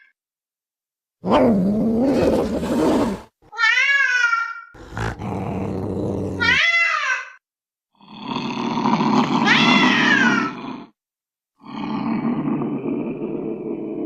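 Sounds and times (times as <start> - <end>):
creature growling: 1.2 - 3.3, 4.8 - 6.6, 8.0 - 11.0, 11.6 - 14.0
cat meowing: 6.4 - 7.4, 9.4 - 10.6.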